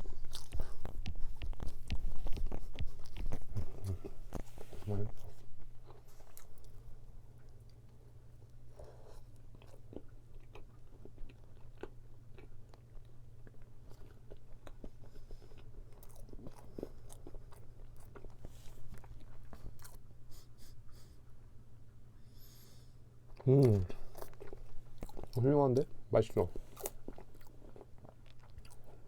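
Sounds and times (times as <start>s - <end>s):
chewing and crunching tart: 0.0s - 20.9s, 23.2s - 29.0s.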